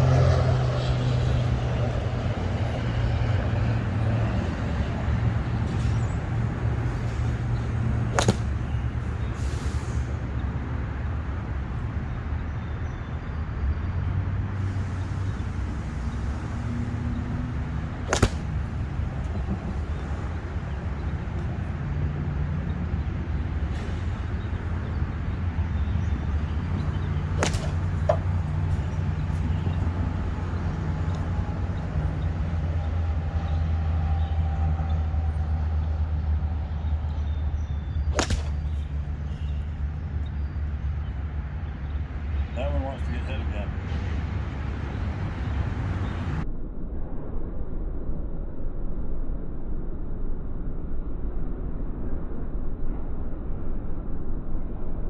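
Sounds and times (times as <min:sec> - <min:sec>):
golf club striking ball: 0:03.4 - 0:11.7, 0:15.1 - 0:22.0, 0:23.0 - 0:33.2, 0:38.1 - 0:39.8.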